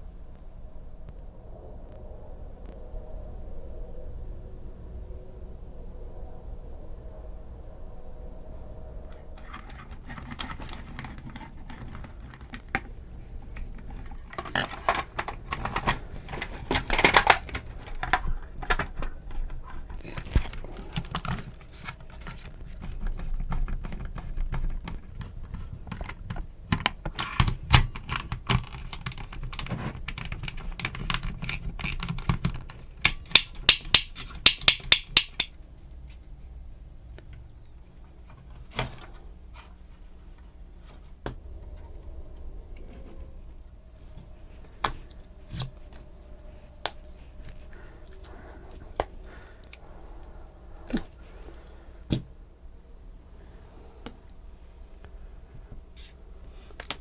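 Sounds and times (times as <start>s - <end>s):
small hard objects clicking and rattling: 26.8s - 35.5s.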